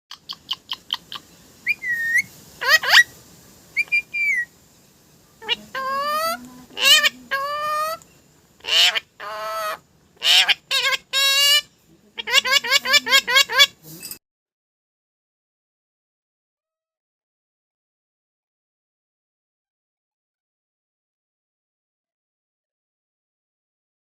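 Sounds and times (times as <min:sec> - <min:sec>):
parrot calling: 0:00.1 - 0:03.2, 0:03.8 - 0:04.5, 0:05.4 - 0:13.8.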